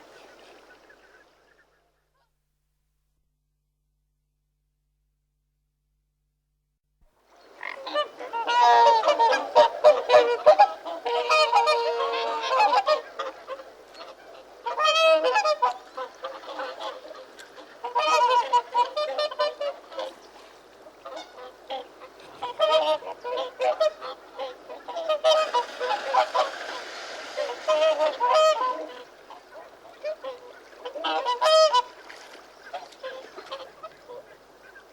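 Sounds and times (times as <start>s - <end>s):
steady background hiss: 0.0s - 2.3s, 7.2s - 34.9s
swans honking: 7.6s - 20.4s, 21.0s - 34.9s.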